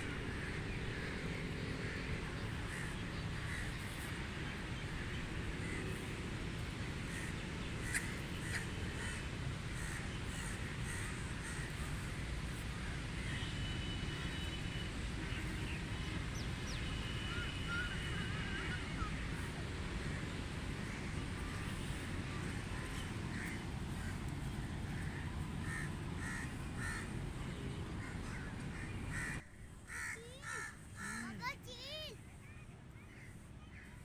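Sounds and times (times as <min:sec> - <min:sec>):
crows cawing: 0:07.1 - 0:09.2, 0:25.0 - 0:27.1, 0:28.0 - 0:31.3.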